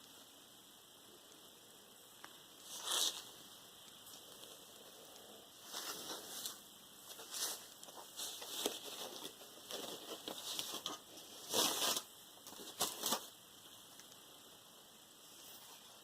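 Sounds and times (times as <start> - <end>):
packaging rustling: 5.6 - 13.3.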